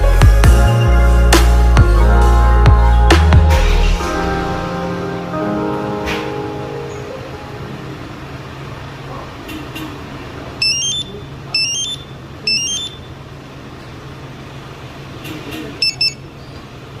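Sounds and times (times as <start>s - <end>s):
quick alarm beeps: 10.6s - 13.1s, 15.8s - 16.2s
car alarm chirps: 10.6s - 13.2s, 15.8s - 16.4s.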